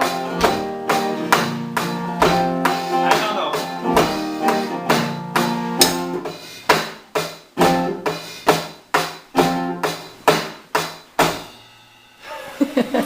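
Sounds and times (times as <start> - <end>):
guitar strummed in chords: 0.0 - 6.3, 9.3 - 10.1.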